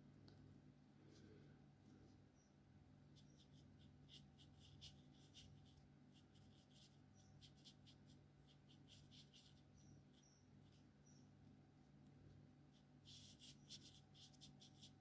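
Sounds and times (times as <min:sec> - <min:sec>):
marker scratching on paper: 0:03.1 - 0:10.9, 0:12.7 - 0:15.0.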